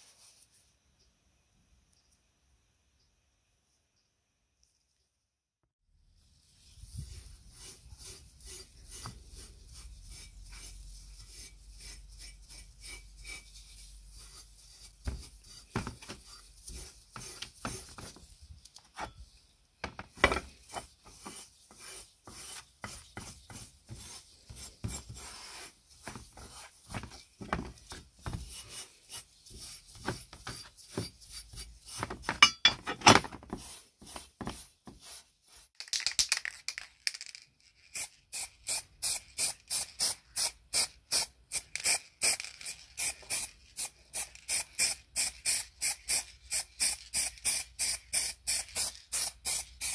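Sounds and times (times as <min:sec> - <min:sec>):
hand filing a workpiece: 0:07.0 - 0:18.0, 0:20.6 - 0:25.8.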